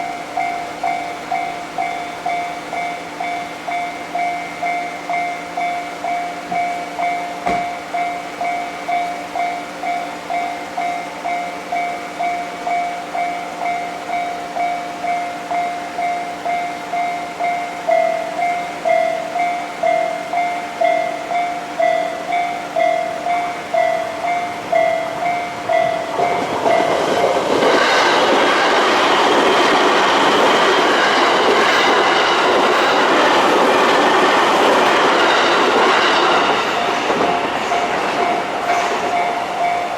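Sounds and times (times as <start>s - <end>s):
railroad crossing alarm ringing: 0.0s - 39.9s
train wheels clattering: 6.4s - 8.6s, 21.8s - 39.9s.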